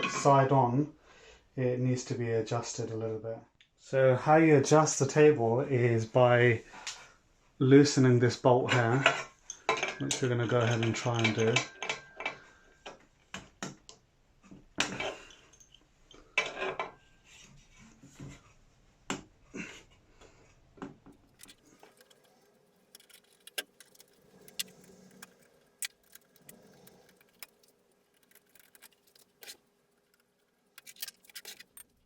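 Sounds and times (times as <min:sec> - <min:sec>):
metal tools clinking and rattling: 0:08.7 - 0:13.0, 0:14.8 - 0:17.0, 0:21.2 - 0:32.0.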